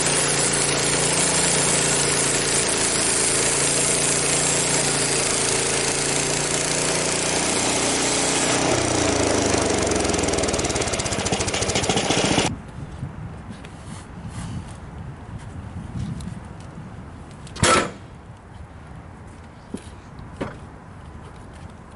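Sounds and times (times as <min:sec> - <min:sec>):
gasoline engine running: 0:07.0 - 0:12.5.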